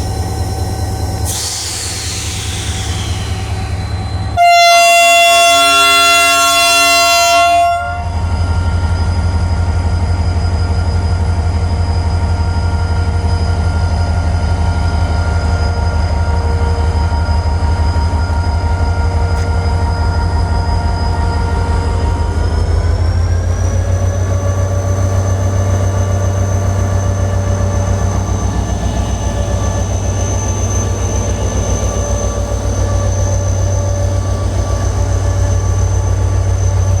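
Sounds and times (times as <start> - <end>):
locomotive whining tones: 0.0 - 37.0
locomotive horn: 4.3 - 8.3
diesel engine rumbling: 13.6 - 37.0.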